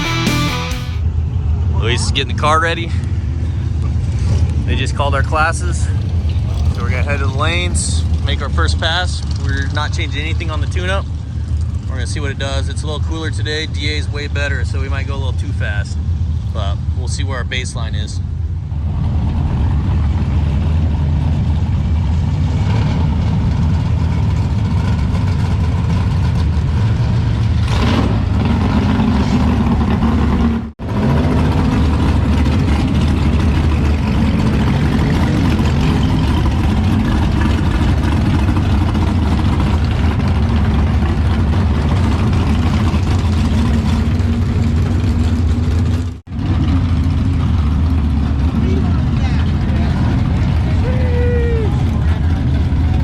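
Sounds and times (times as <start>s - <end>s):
race car engine idling: 0.0s - 27.6s, 29.6s - 53.0s.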